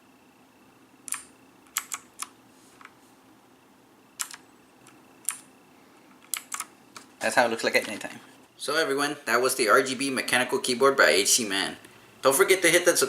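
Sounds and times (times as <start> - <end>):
mechanical keyboard key clicks: 4.2 - 4.4.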